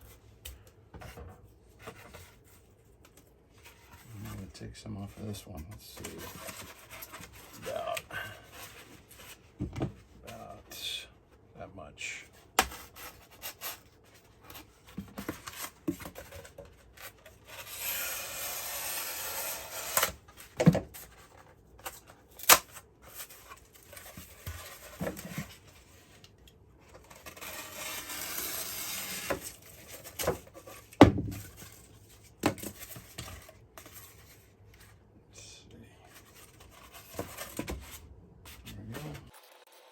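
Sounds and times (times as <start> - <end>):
blade scraping insulation board: 17.0 - 20.6, 26.9 - 31.8.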